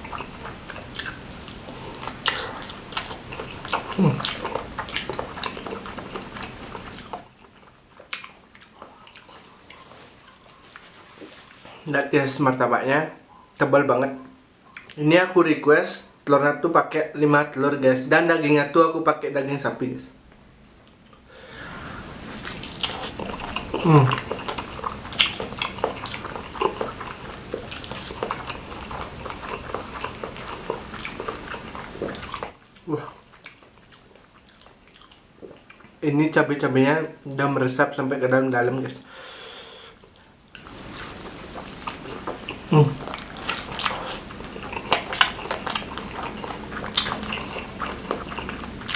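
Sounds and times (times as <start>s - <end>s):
mouth chewing sounds: 0.0s - 11.9s, 22.3s - 36.0s, 39.9s - 48.9s.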